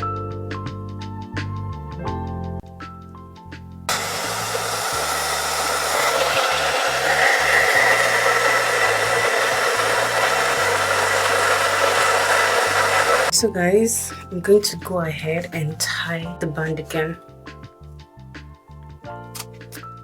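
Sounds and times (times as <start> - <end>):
blow dryer running: 3.9 - 13.3.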